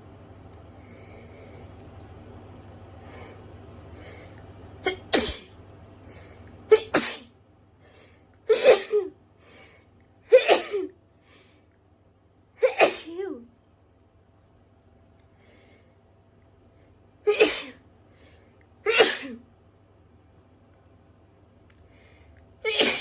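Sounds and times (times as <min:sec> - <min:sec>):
faint breaths: 0:00.7 - 0:01.8, 0:03.0 - 0:04.4, 0:07.8 - 0:08.3, 0:09.4 - 0:10.0, 0:15.3 - 0:17.0, 0:18.0 - 0:18.7, 0:21.8 - 0:22.5
person sneezing: 0:04.8 - 0:05.5, 0:06.7 - 0:07.3, 0:10.3 - 0:10.9, 0:12.6 - 0:13.4, 0:17.3 - 0:17.8, 0:18.9 - 0:19.4, 0:22.6 - 0:23.0.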